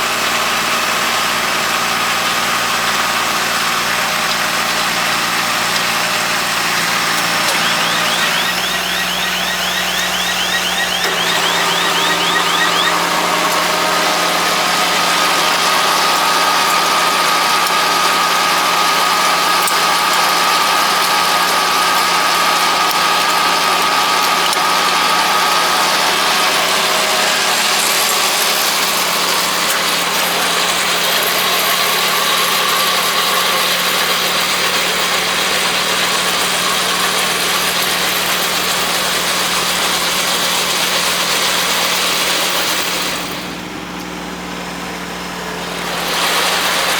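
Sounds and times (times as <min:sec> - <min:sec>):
baler machinery running: 0:00.0 - 0:46.9
tractor diesel engine running: 0:00.0 - 0:46.9
high whine: 0:07.4 - 0:31.4.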